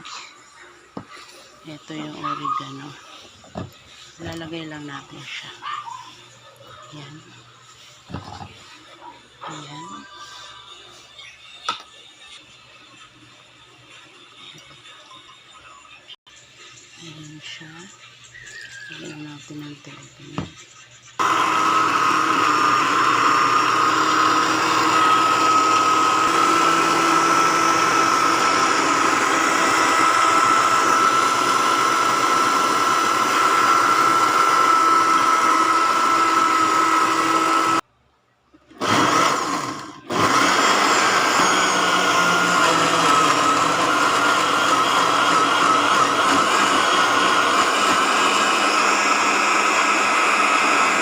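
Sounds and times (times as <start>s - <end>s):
electric blender running: 21.2s - 37.8s, 38.7s - 51.0s.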